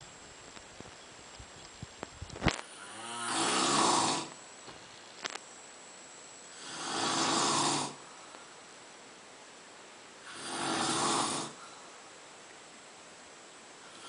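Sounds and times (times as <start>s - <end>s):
animal snoring: 2.6s - 4.4s, 6.5s - 8.0s, 10.2s - 11.6s, 13.8s - 14.0s.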